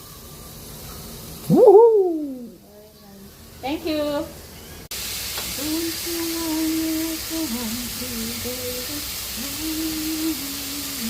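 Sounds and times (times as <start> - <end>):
person humming slow tune: 1.5 - 2.6, 5.6 - 11.0
steady hiss: 4.9 - 11.0.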